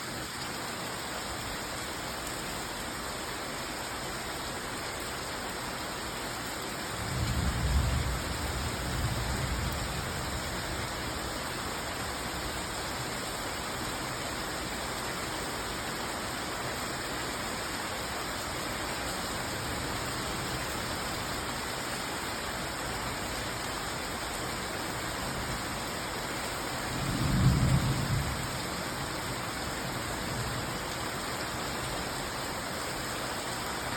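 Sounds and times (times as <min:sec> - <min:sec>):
rain falling: 0:00.0 - 0:33.9.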